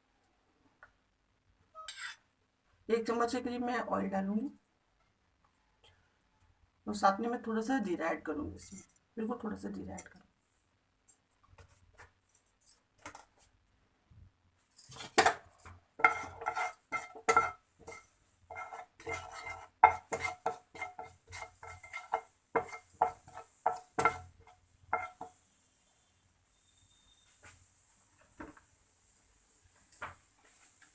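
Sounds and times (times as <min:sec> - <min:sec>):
metal spoon striking a pan: 0:16.0 - 0:24.3
seeds sizzling in hot oil: 0:16.0 - 0:27.9.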